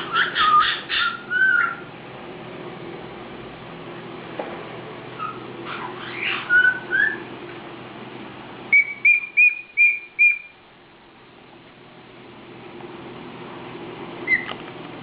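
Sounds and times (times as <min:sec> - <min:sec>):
parrot whistling: 0:00.0 - 0:01.9, 0:05.2 - 0:07.3, 0:08.7 - 0:10.6, 0:14.2 - 0:14.5.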